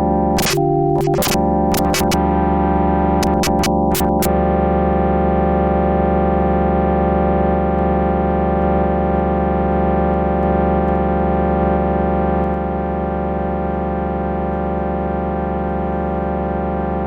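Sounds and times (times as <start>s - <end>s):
synthesizer drone: 0.0s - 5.7s.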